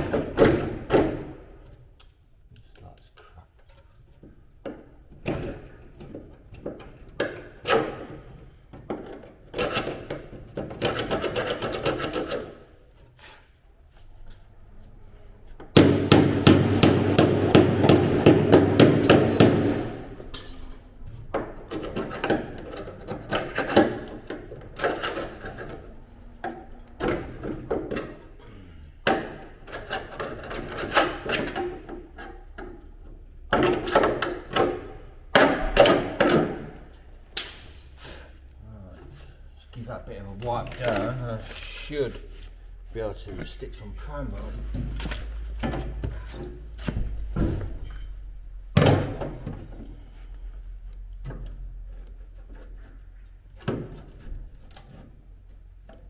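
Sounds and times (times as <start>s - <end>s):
hammer knocking on metal: 15.7s - 20.2s.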